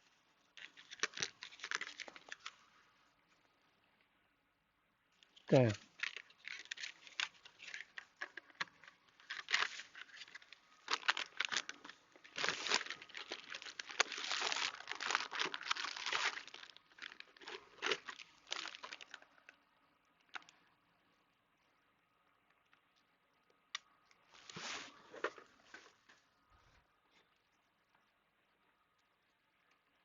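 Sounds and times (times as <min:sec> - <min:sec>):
plastic packaging crinkling: 0:00.6 - 0:02.6, 0:05.8 - 0:19.5.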